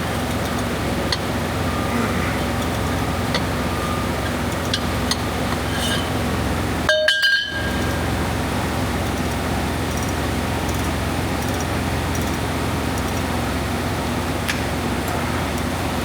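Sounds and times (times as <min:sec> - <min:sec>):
machine drone: 0:00.0 - 0:16.0
ringing metallic clink: 0:06.9 - 0:08.0.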